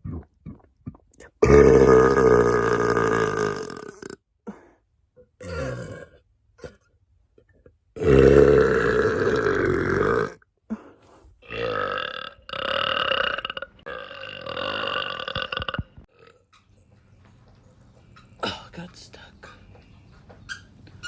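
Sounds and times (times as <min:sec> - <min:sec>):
woman burping loudly: 0:00.0 - 0:04.6, 0:05.3 - 0:06.9, 0:08.0 - 0:10.4, 0:11.4 - 0:16.4.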